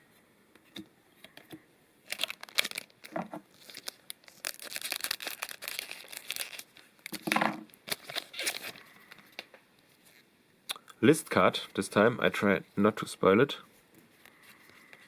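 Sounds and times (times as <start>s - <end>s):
foil wrapper tearing and crinkling: 2.0s - 9.4s.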